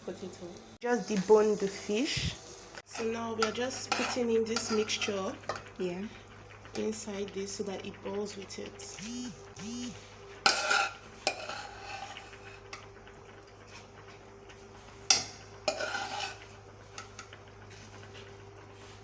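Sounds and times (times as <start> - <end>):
spoon scraping pot: 2.9 - 5.7, 10.4 - 12.8, 15.1 - 17.3.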